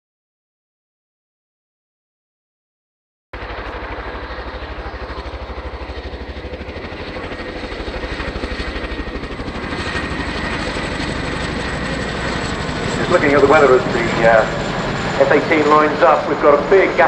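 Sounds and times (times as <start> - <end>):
helicopter rotor beat: 3.4 - 17.0
turbine whine: 3.4 - 17.0.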